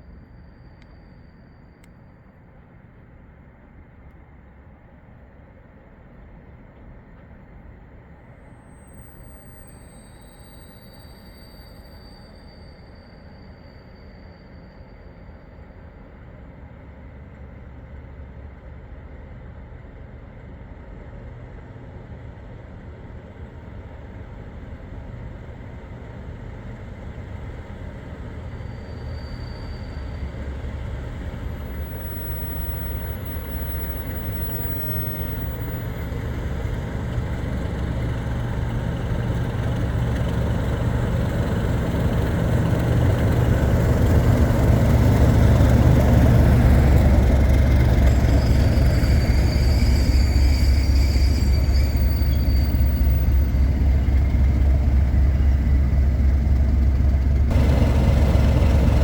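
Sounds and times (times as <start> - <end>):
diesel locomotive engine drumming: 15.8 - 59.0.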